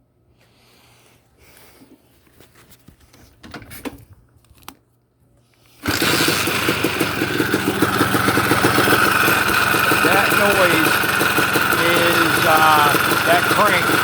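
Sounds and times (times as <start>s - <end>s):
two-stroke engine running: 5.8s - 14.0s.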